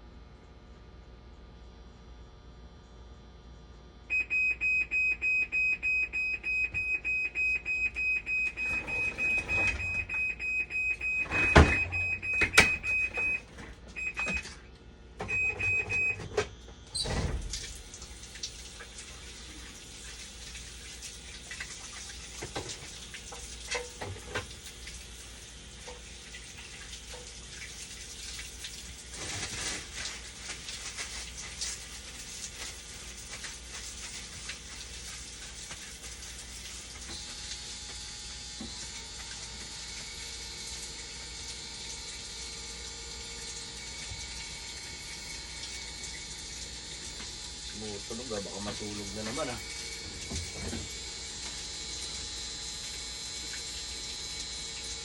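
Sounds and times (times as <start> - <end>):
machine alarm beeping: 4.1 - 14.5, 15.2 - 16.2.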